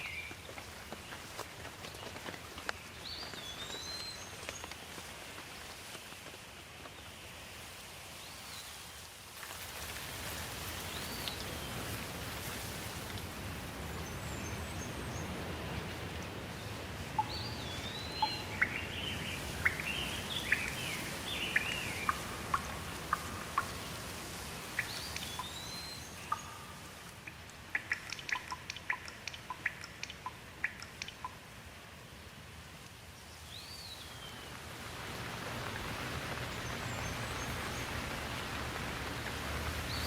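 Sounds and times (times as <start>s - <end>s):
raindrops ticking: 0.0s - 7.0s, 17.0s - 31.6s, 34.5s - 40.0s
steady rain hiss: 0.0s - 40.0s.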